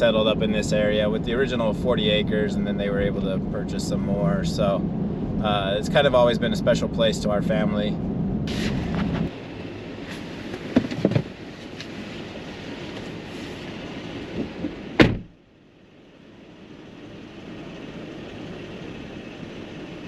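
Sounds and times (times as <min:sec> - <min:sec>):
road and cabin noise: 0:00.0 - 0:20.0
sharp thump: 0:10.6 - 0:11.3, 0:14.4 - 0:15.4.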